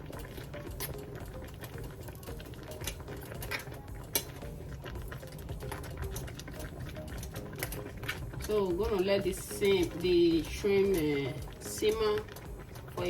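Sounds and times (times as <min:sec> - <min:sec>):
soup simmering with pops: 0:00.0 - 0:13.0.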